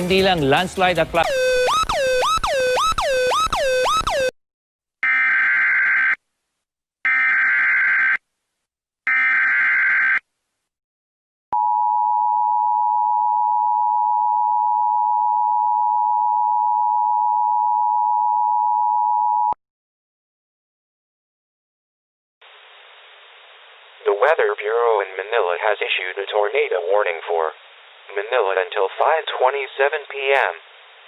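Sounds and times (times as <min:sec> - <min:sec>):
swooping electronic tones: 0:01.2 - 0:04.3
two-tone attention signal: 0:01.3 - 0:04.3.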